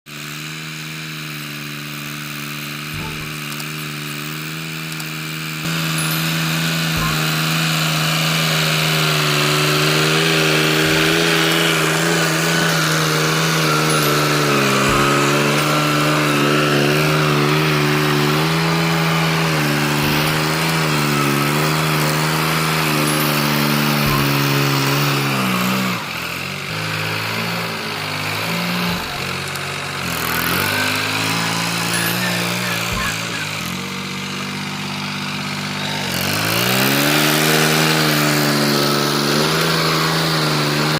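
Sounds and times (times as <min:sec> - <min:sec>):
gliding melody over a drone: 0:05.7 - 0:26.1.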